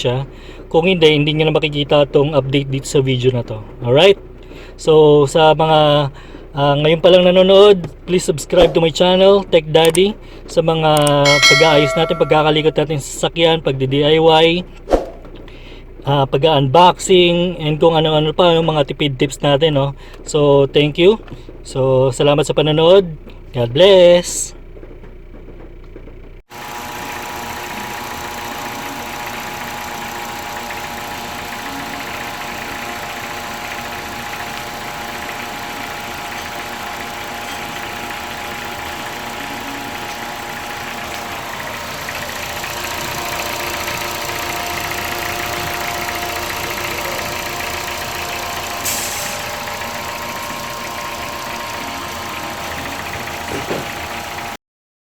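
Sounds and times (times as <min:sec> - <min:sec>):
car engine idling: 0:00.0 - 0:13.2, 0:24.5 - 0:54.6.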